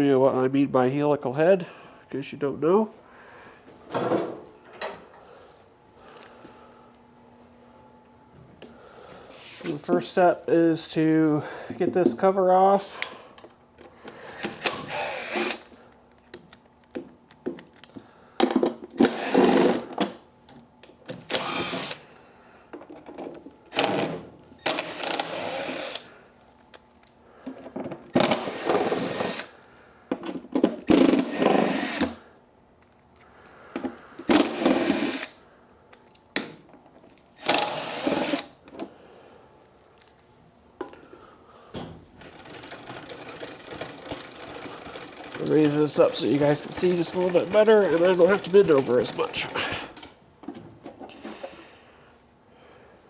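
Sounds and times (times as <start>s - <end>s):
power driver running: 13.8s - 15.9s, 18.9s - 20.2s, 21.1s - 22.2s, 23.7s - 26.1s, 28.1s - 29.5s, 37.4s - 38.6s, 42.2s - 50.1s.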